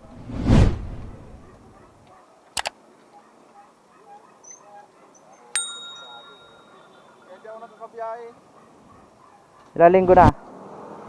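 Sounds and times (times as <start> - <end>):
sharp metallic ding: 5.6 - 7.0.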